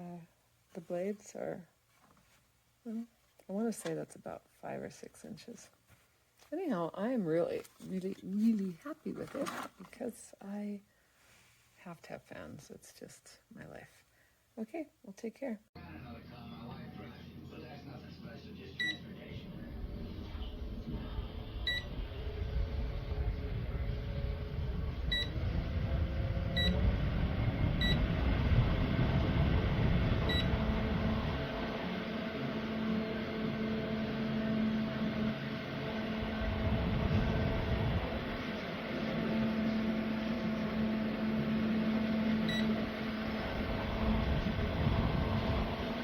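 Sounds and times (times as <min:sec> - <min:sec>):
fan motor hum and rushing air: 0:19.0 - 0:46.0.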